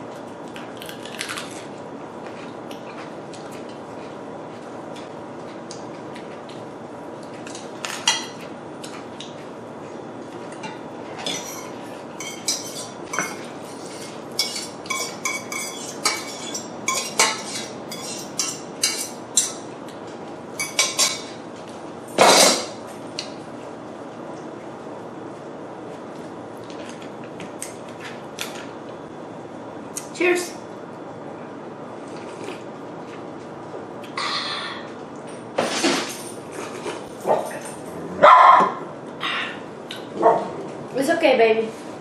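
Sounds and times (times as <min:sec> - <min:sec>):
dishes clattering: 0:10.6 - 0:13.5, 0:14.4 - 0:19.6, 0:20.6 - 0:21.4
utensils clinking against bowl: 0:10.6 - 0:19.6, 0:20.6 - 0:21.4.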